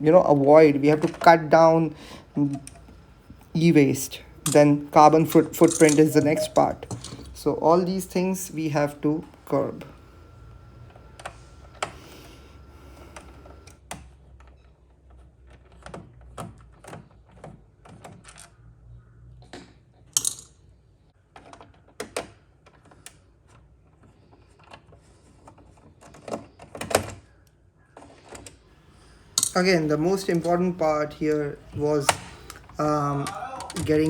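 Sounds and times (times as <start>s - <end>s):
clicks and taps of parts: 0.4s - 1.4s, 4.4s - 7.4s, 28.3s - 29.6s, 31.7s - 32.8s.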